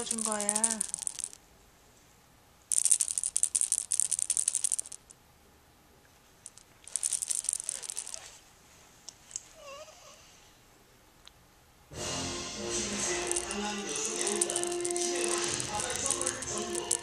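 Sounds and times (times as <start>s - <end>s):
toy rattle shaken: 0.0s - 1.4s, 2.7s - 5.1s, 6.4s - 8.4s, 12.9s - 17.0s.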